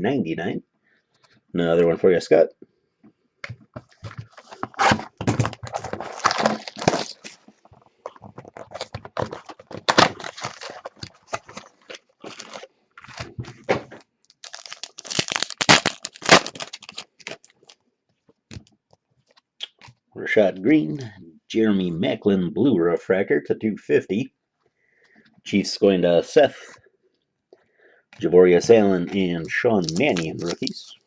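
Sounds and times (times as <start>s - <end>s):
foil wrappers crinkling and tearing: 4.3s - 7.5s, 8.5s - 13.3s, 14.2s - 17.8s, 29.4s - 30.9s.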